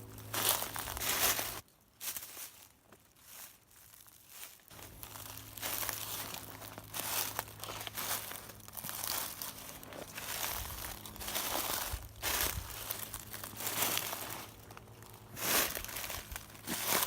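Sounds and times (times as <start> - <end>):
footsteps crunching through leaves: 0.0 - 17.0
low steady hum: 0.0 - 17.0.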